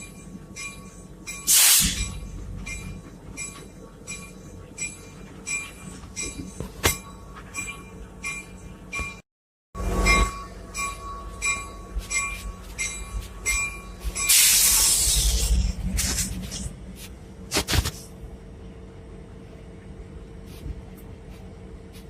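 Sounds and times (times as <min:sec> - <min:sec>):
locomotive bell ringing: 0:00.0 - 0:09.2, 0:09.8 - 0:14.7
steam hiss: 0:14.3 - 0:15.6.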